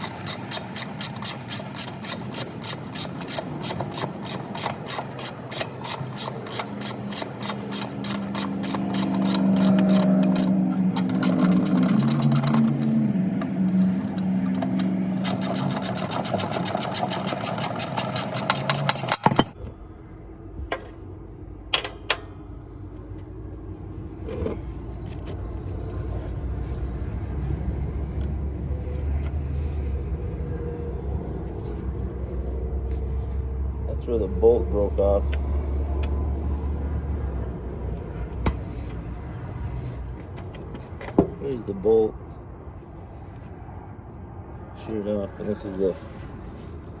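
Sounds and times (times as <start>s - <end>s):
impact wrench hammering: 0.0s - 13.0s, 13.8s - 19.6s
sharp clicks: 0.0s - 13.0s
low steady rumble: 19.5s - 40.9s.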